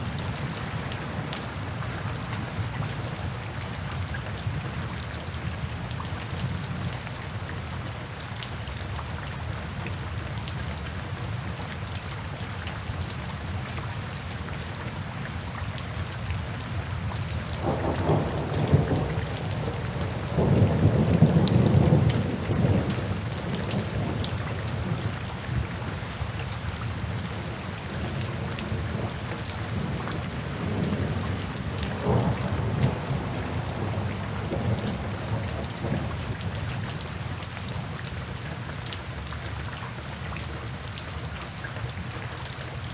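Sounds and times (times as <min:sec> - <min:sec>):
rain falling: 0:00.0 - 0:42.9
distant thunder rumbling: 0:17.6 - 0:25.1, 0:28.3 - 0:36.4.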